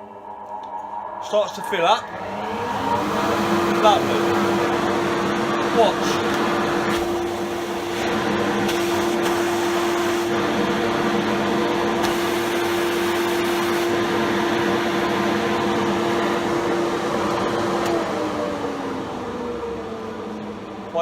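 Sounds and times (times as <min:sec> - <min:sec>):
motor hum: 0:00.0 - 0:20.9
dust collector air rushing: 0:00.9 - 0:10.9.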